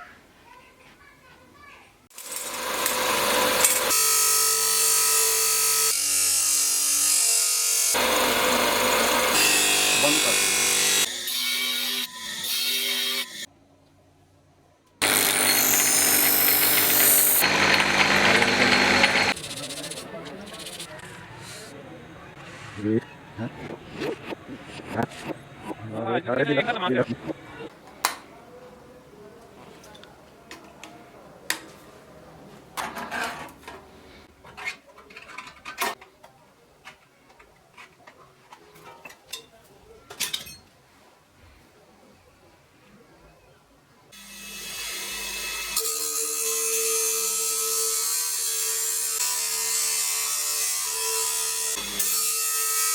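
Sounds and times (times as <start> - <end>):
power tool cutting metal: 2.2 - 13.5, 15.0 - 20.9, 44.2 - 52.9
machine running: 15.0 - 20.9, 22.5 - 27.7.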